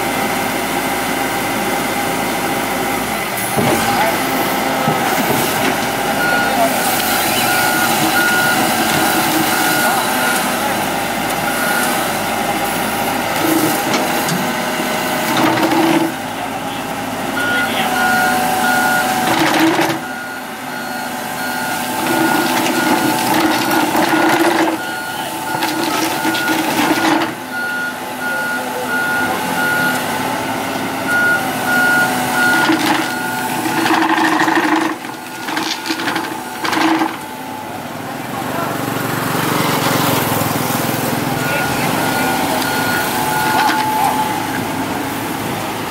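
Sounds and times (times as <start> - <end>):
heavy diesel engine running: 0.0 - 45.9
backup alarm beeping: 6.2 - 10.6, 11.4 - 12.2, 17.4 - 30.1, 31.0 - 37.4, 41.4 - 44.6.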